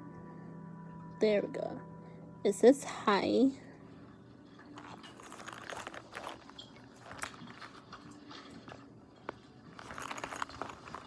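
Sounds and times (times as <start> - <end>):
stationery clicking and rustling: 4.8 - 11.0.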